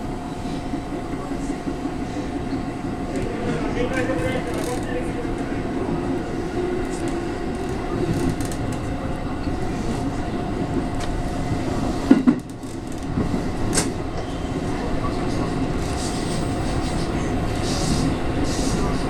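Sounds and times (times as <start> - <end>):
train wheels rumbling on rail: 0.0 - 19.0.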